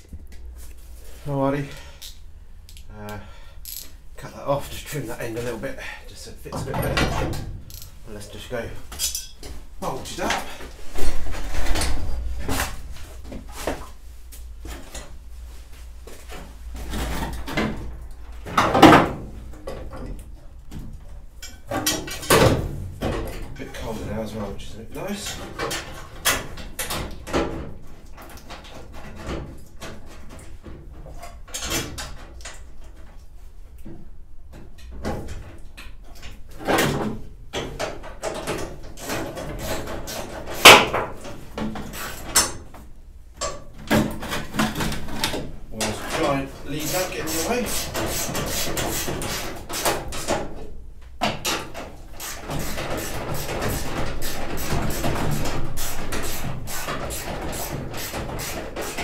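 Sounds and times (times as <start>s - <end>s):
tools and metal parts clattering: 3.6s - 4.0s, 6.5s - 8.0s, 8.8s - 13.0s, 16.2s - 20.3s, 21.3s - 24.1s, 34.8s - 42.8s, 43.4s - 58.2s
metal tools clunking and scraping: 6.5s - 8.0s, 8.8s - 13.8s, 20.8s - 23.8s.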